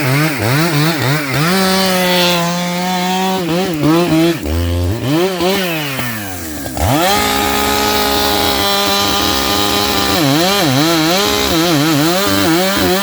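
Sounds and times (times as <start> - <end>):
chainsaw cutting wood: 0.0 - 13.0.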